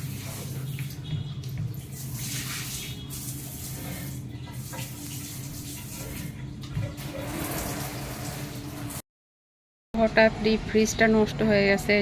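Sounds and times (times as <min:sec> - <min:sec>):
tap water running and splashing: 0:00.0 - 0:09.0.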